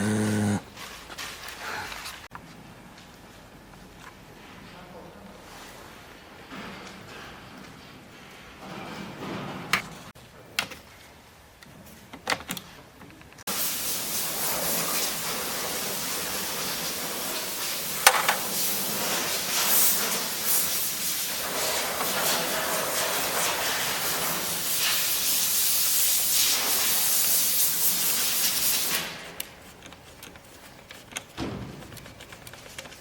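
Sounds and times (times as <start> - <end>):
steady loud hiss: 13.5 - 29.4.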